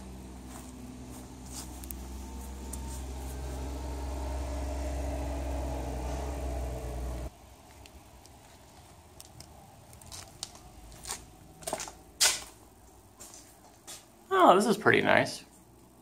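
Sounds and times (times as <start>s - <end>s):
low engine hum: 0.0s - 9.9s.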